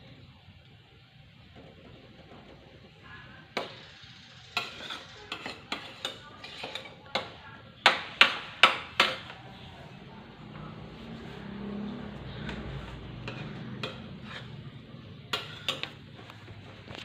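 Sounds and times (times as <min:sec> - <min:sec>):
utensil knocking on cooking pot: 0:07.9 - 0:09.3.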